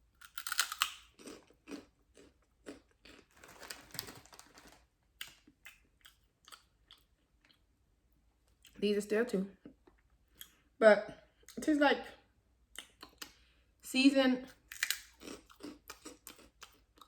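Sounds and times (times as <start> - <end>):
crisps being crunched: 0.2 - 5.8, 14.7 - 16.5.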